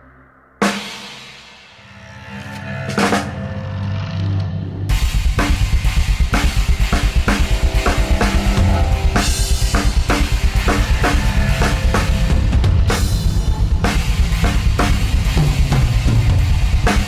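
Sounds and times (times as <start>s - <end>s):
cymbal wash: 4.9s - 17.0s
drum kit groove: 4.9s - 17.0s
sustained pitched instrument notes: 6.8s - 15.9s.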